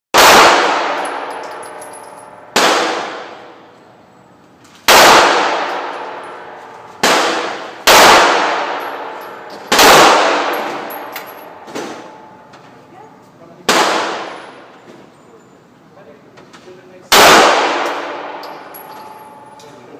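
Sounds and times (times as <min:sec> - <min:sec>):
gunshots with ringing echo: 0:00.2 - 0:03.7, 0:04.9 - 0:12.5, 0:13.7 - 0:14.7, 0:17.1 - 0:19.6.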